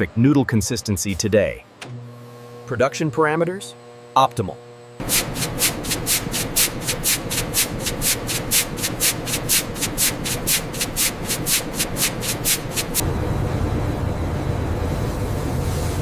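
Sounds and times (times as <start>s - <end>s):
machine rhythmic swishing: 5.0s - 13.0s
steady low rumble: 5.0s - 15.8s.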